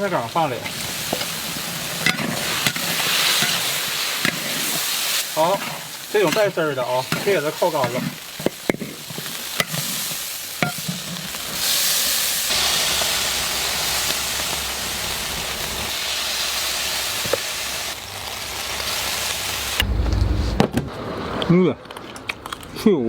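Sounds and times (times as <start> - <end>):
food sizzling in a wok: 0.0 - 19.9
low rumble: 19.5 - 21.2.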